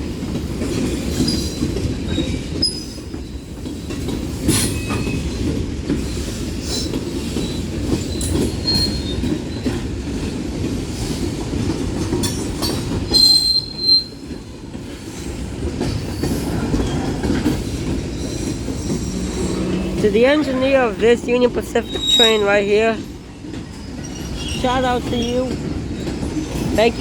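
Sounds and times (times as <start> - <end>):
wheels clattering over rail joints: 0.2 - 27.0
high wheel squeals: 7.4 - 9.6, 13.1 - 14.2, 18.1 - 20.9, 21.5 - 22.8, 23.8 - 25.5
freight cars rumbling past: 16.2 - 23.0.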